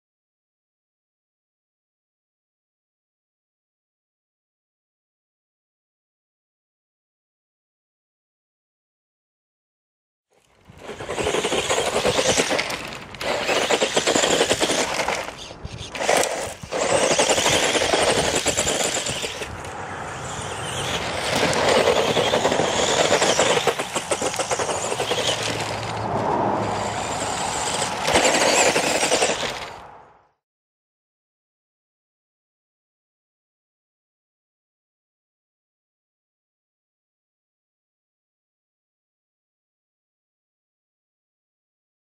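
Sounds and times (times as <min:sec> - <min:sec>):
rc buggy motor and gears rattling: 0:10.3 - 0:30.0.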